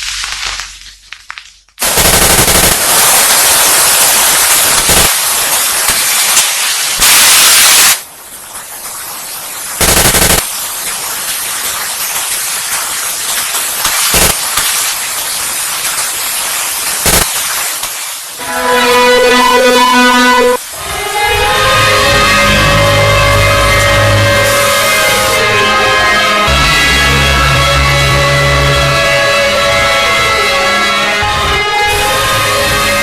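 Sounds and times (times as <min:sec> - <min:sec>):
harsh crackling static noise: 0:00.0 - 0:18.9.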